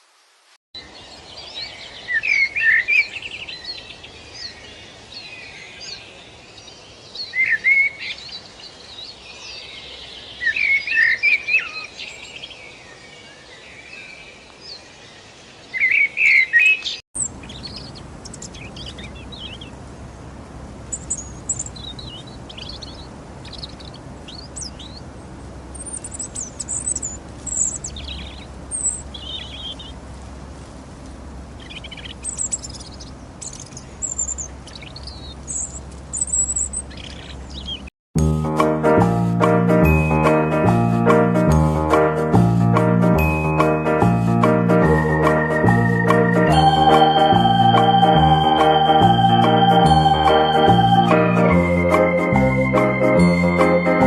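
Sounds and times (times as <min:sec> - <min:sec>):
faint high bird chirps: 0:20.9 - 0:25.0, 0:31.6 - 0:37.9
high-pitched bird chorus: 0:20.9 - 0:25.0, 0:25.8 - 0:30.0, 0:31.6 - 0:37.9.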